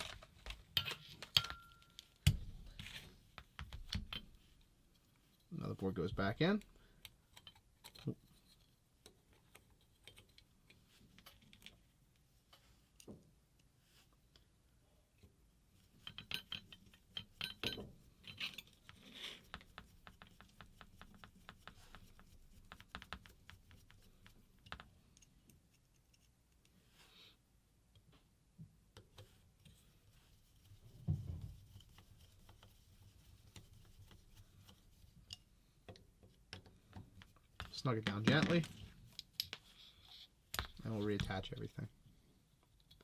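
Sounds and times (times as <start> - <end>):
light clicks and scrapes of parts: 0.0 - 14.6, 15.2 - 27.4, 29.0 - 43.0.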